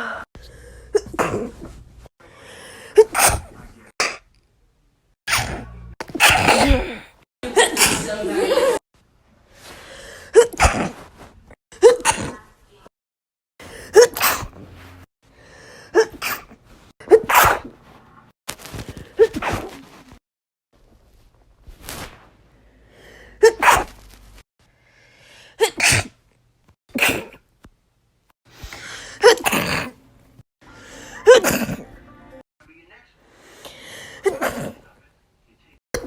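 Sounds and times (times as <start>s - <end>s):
person sneezing: 0.9s - 1.8s, 2.9s - 4.3s, 5.3s - 8.5s, 10.3s - 11.1s, 11.8s - 12.4s, 13.8s - 14.6s, 15.9s - 17.7s, 23.4s - 24.0s, 25.6s - 26.2s, 26.9s - 27.4s, 28.6s - 30.0s, 31.0s - 31.8s.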